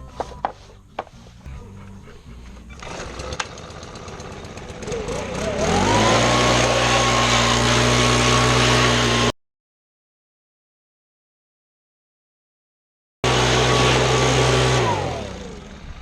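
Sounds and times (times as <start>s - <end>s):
air blower motor whine: 2.5s - 9.3s, 13.2s - 16.0s.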